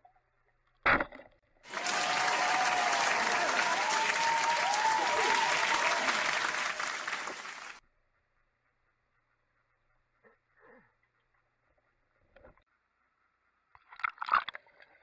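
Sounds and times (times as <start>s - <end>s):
crowd applause: 1.7s - 7.8s
rising and falling calls: 1.7s - 7.8s.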